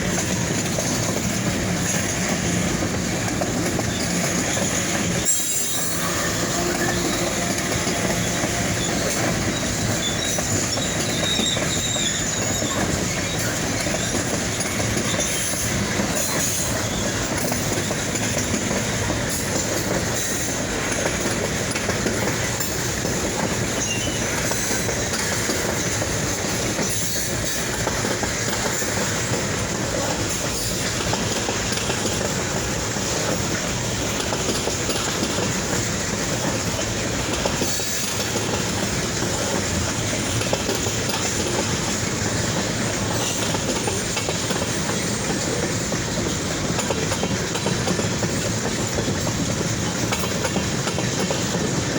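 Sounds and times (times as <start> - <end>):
freight train rolling past: 0.0 - 51.9
wheel squeal: 3.9 - 17.2, 23.8 - 24.7.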